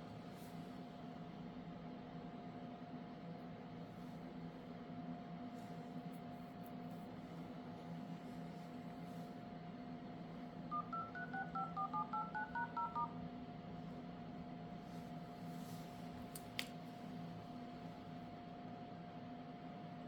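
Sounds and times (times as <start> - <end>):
electronic beeping melody: 10.7 - 13.1.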